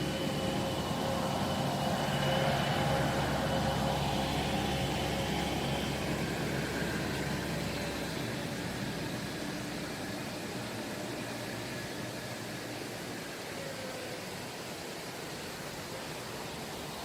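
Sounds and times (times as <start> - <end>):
vehicle engine humming: 0.0 - 13.4
steady rushing hiss: 0.0 - 17.0.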